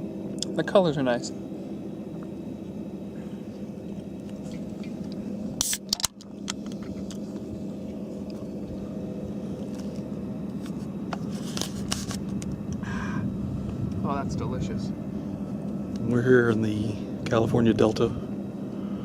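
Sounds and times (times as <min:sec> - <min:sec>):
boat motor humming: 0:00.0 - 0:19.0.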